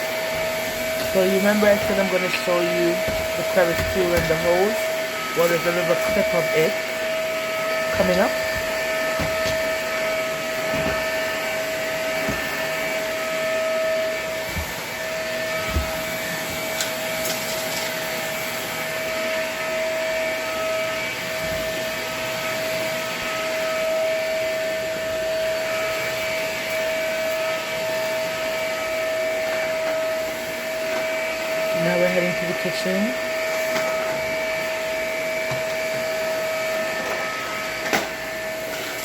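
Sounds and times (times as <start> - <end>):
vacuum cleaner running: 0.0 - 39.0
vacuum knocking on floor: 0.3 - 4.8, 7.8 - 9.8, 10.6 - 11.1, 12.2 - 12.6, 15.6 - 16.1.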